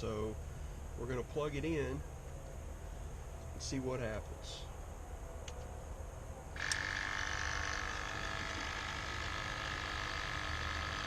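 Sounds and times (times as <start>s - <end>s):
vacuum pump high-pitched hum: 6.5s - 11.0s.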